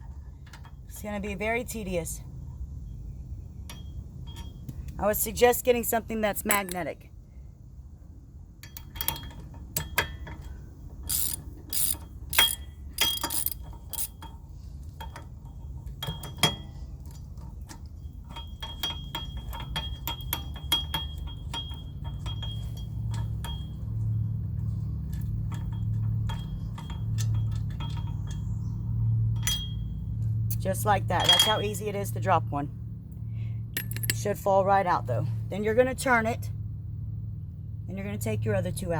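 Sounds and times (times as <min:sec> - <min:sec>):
sharp metal clicks: 0:06.4 - 0:06.9, 0:11.0 - 0:14.3, 0:33.8 - 0:34.3
ratchet wrench clicking: 0:11.0 - 0:14.3.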